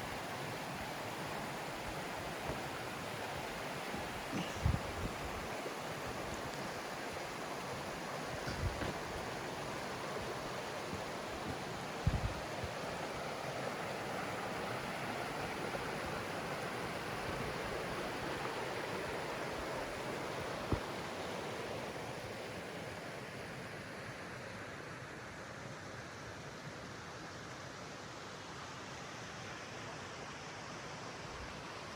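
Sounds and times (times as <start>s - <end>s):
stream rushing: 0.0s - 31.9s
short low thumps: 12.0s - 12.4s.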